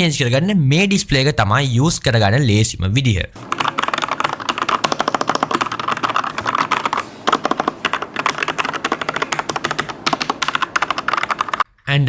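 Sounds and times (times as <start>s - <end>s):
mechanical keyboard typing: 3.4s - 11.7s.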